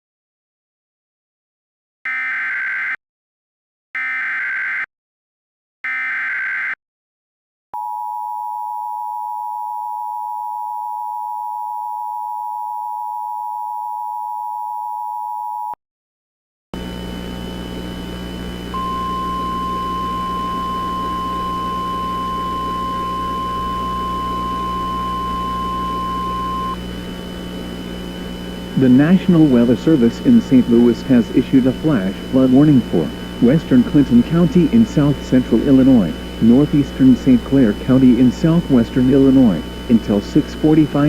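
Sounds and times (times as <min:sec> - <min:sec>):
single-pitch alarm tone: 0:07.8 - 0:15.8, 0:18.7 - 0:26.8
radio static with hum: 0:16.8 - 0:41.0
digital data bursts: 0:18.8 - 0:26.8
two-tone attention signal: 0:18.8 - 0:26.8.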